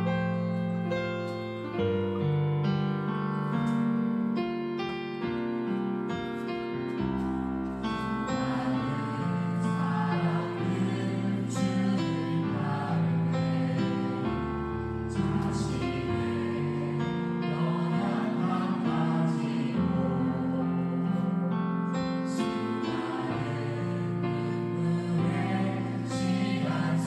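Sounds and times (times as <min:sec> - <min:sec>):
worship band playing: 0:07.1 - 0:27.0
voices singing: 0:07.7 - 0:27.0.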